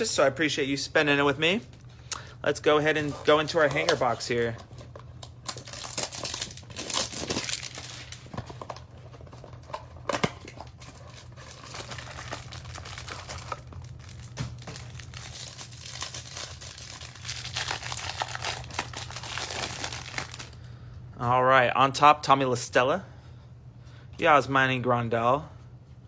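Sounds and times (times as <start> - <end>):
wrapping crinkling: 2.6 - 20.7
packaging tearing: 3.1 - 20.6.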